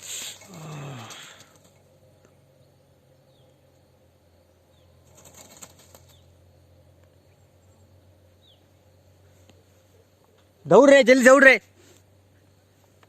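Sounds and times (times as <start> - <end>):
bird flapping wings: 0.0 - 1.8, 5.0 - 6.3.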